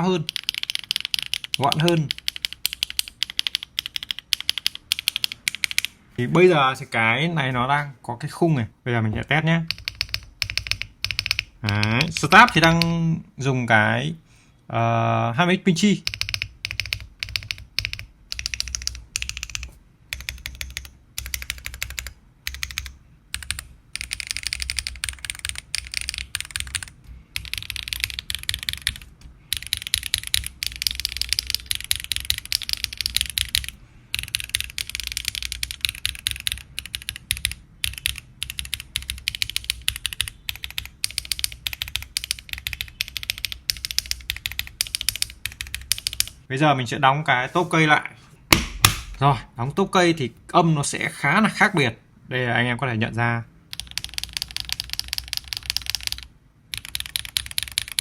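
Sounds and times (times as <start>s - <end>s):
mechanical keyboard typing: 0.0s - 6.0s, 9.6s - 13.0s, 16.0s - 46.4s, 53.7s - 58.0s.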